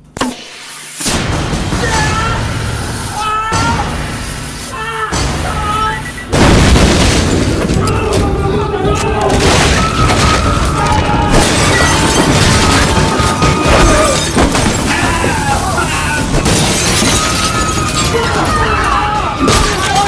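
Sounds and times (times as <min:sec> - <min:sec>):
crashing and shattering: 0:06.3 - 0:08.5, 0:09.2 - 0:20.0.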